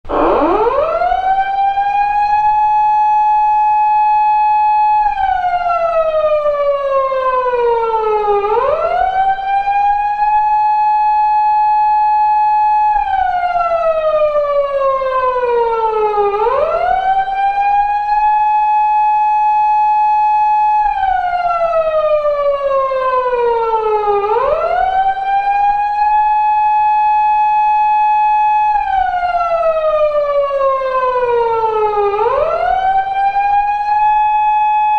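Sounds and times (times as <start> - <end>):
police siren rising and falling: 0.0 - 34.9.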